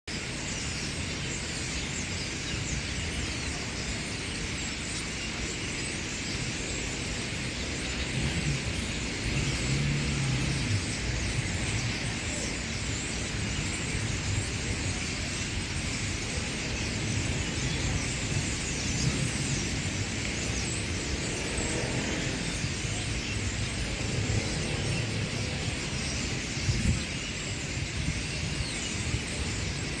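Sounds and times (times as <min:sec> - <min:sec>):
traffic rumble: 0:00.2 - 0:30.0.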